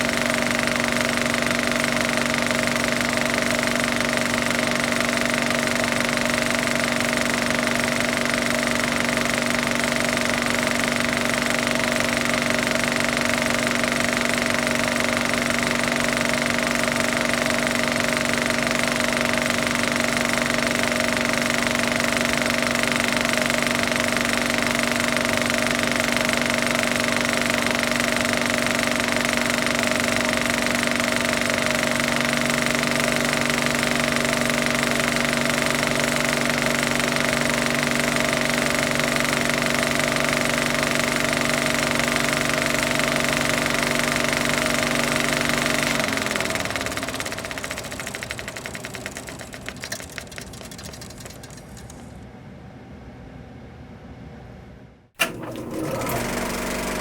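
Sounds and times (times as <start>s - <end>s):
film projector running: 0.0s - 52.2s, 55.2s - 57.0s.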